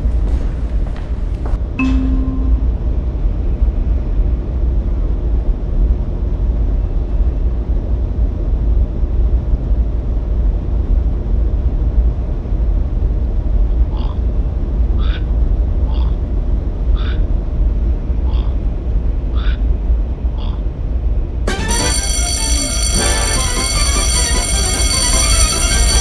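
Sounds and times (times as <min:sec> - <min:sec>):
click and short tone: 0:01.8 - 0:03.0.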